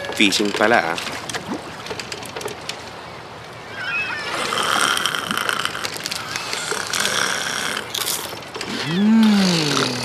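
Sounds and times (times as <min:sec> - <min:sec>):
person exclaiming: 0:08.8 - 0:10.0.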